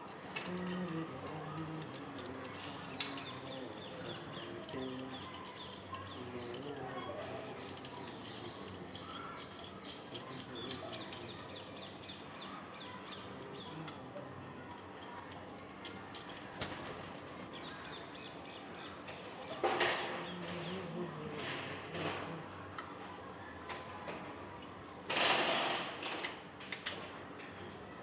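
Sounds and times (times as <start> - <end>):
outdoor background noise: 0.0 - 28.0
birds chirping and calling: 0.4 - 14.1, 15.8 - 23.0.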